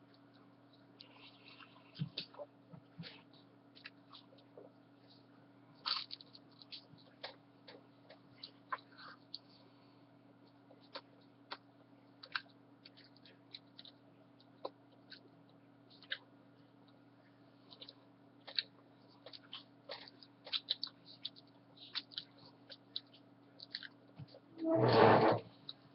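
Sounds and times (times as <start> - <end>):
faint steady hum: 0.0 - 25.9
person chewing: 5.8 - 9.6, 10.5 - 17.0, 17.7 - 24.1.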